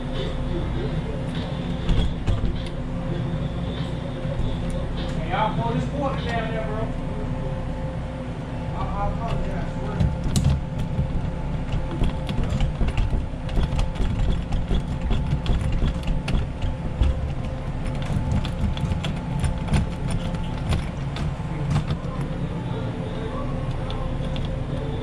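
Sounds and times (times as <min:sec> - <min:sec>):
low rumble and hum: 0:00.0 - 0:25.0
lock clicking and rattling: 0:10.0 - 0:22.3.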